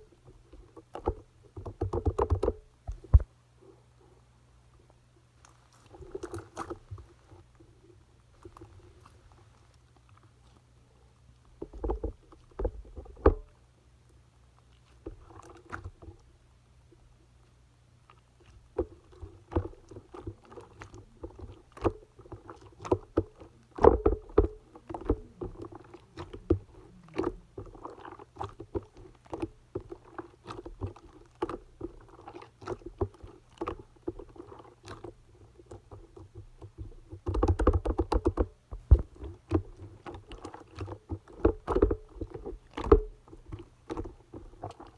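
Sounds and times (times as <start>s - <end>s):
slime squishing by hand: 5.4s - 7.4s, 18.1s - 44.9s.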